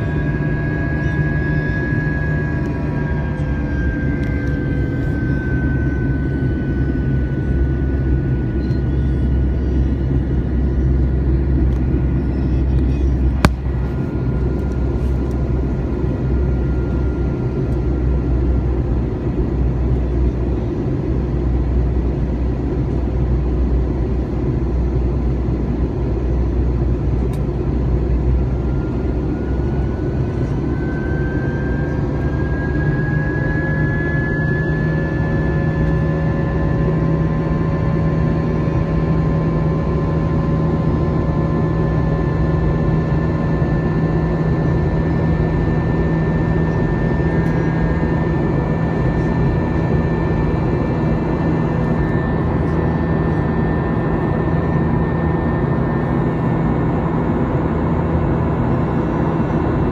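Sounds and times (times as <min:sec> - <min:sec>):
low rumbling drone: 0:00.0 - 0:59.9.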